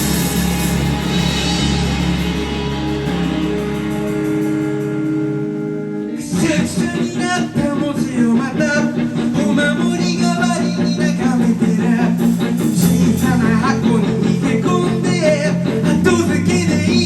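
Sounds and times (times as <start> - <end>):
live rock band: 0.0 - 17.0
person singing: 5.9 - 17.0.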